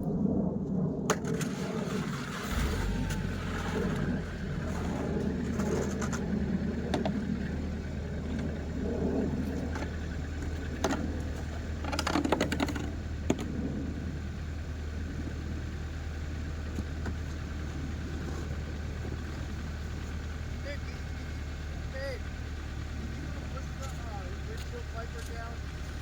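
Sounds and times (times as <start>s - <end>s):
car engine idling: 1.1s - 26.0s
scraping snow and ice off car: 1.2s - 8.5s, 16.7s - 20.8s
sharp clicks: 23.8s - 25.5s.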